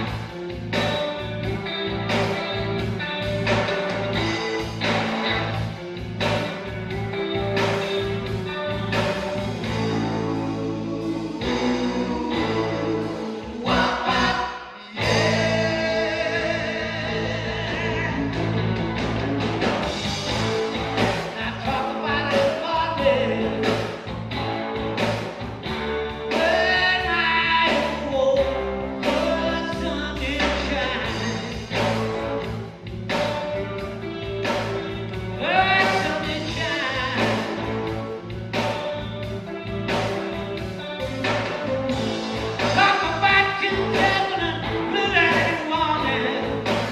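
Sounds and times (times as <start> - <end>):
person singing over band: 9.7 - 18.4, 42.6 - 46.9.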